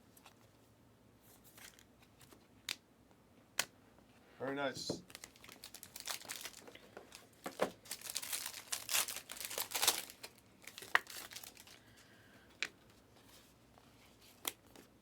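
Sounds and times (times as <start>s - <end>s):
plastic packaging crinkling: 5.0s - 11.9s.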